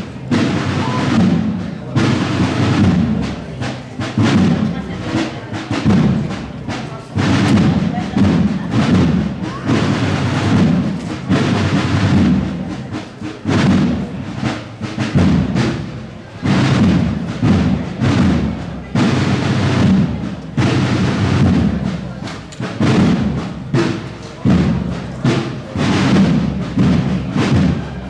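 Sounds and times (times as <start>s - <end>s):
music with heavy drum beats: 0.0s - 28.0s.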